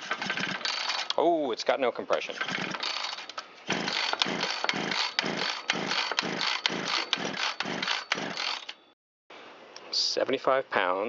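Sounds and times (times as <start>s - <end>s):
trimmer engine being cranked: 0.0s - 1.2s, 2.1s - 8.8s.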